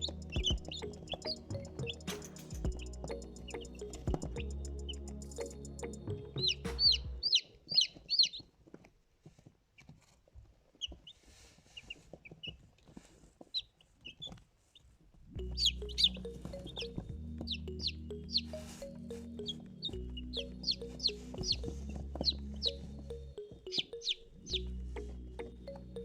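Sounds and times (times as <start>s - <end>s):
chicks peeping: 6.4s - 8.5s, 15.6s - 18.8s, 19.4s - 23.1s, 23.7s - 24.6s.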